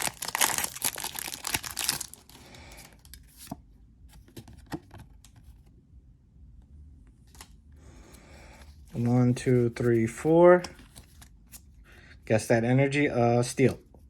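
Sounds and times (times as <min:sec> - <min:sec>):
foil wrapper tearing and crinkling: 0:00.0 - 0:02.3.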